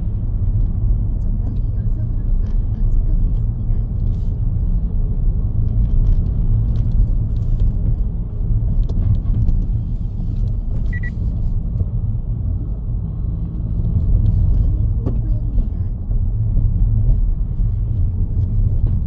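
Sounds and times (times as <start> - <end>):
car engine and tyre rumble: 0.0 - 19.0
short high beep: 10.9 - 11.1.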